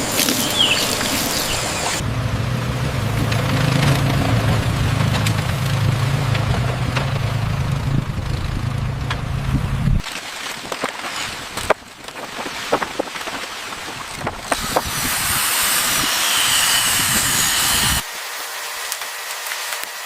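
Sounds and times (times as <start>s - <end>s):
loud steady hiss: 0.0s - 5.0s, 14.5s - 18.8s
low engine hum: 0.0s - 10.0s.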